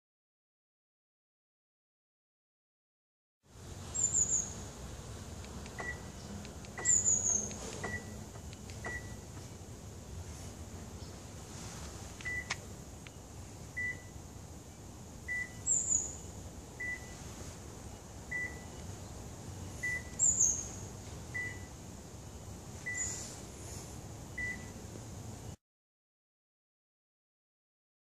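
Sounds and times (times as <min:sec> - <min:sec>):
high chirps: 0:03.9 - 0:04.6, 0:05.5 - 0:09.4, 0:15.3 - 0:17.2, 0:17.9 - 0:23.4
car electronic beeper: 0:05.7 - 0:09.3, 0:12.2 - 0:12.6, 0:13.8 - 0:14.2, 0:15.3 - 0:16.0, 0:16.8 - 0:17.2, 0:18.3 - 0:18.8, 0:19.8 - 0:20.2, 0:21.3 - 0:21.7, 0:22.8 - 0:23.2, 0:24.3 - 0:24.8.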